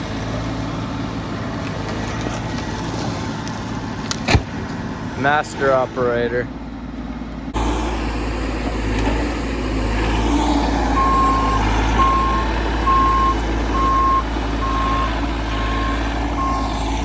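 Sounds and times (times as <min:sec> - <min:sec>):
excavator diesel engine: 0:00.0 - 0:17.0
travel alarm beeping: 0:11.0 - 0:16.8.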